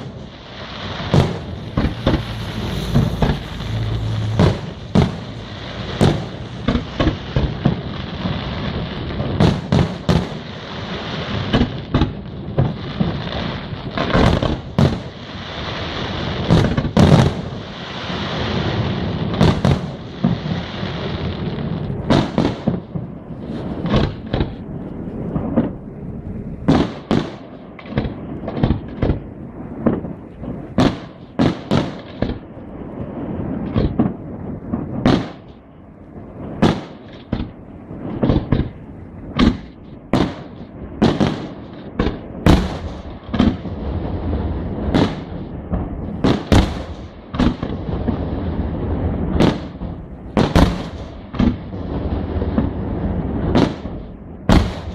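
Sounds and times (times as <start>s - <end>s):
fireworks shells bursting: 0.0s - 8.6s.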